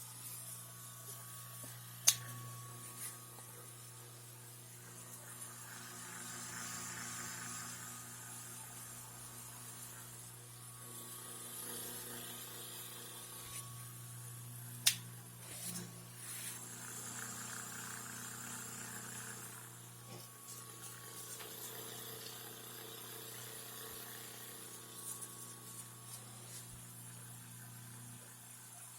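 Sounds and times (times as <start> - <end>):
electric fan humming: 0.0 - 28.8
sharp click: 14.8 - 15.1.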